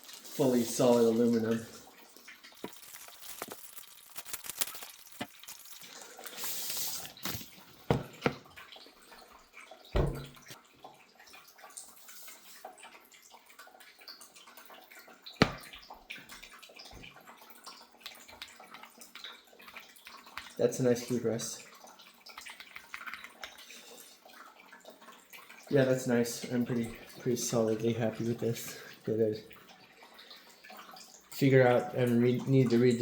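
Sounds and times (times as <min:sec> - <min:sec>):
rustle of wrapping: 0:02.6 - 0:07.6
keyboard knocking on surface: 0:10.0 - 0:10.3
light clicks and taps: 0:22.3 - 0:23.7.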